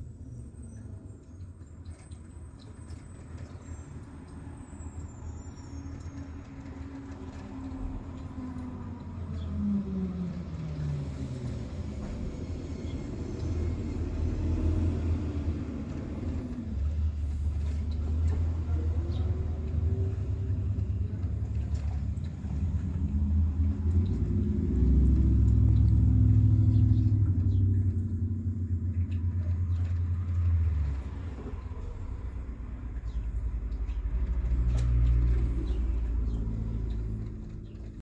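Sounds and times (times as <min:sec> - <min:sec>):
passing motor vehicle rumble: 0:00.0 - 0:38.0.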